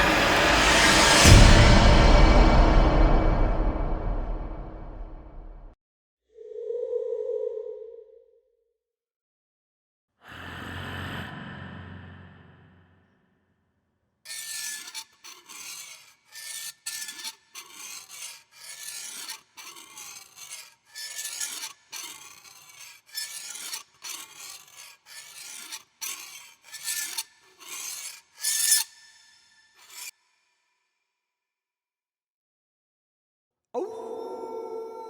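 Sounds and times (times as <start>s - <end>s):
rasping metallic scraping strokes: 0.0s - 5.7s, 14.3s - 30.6s.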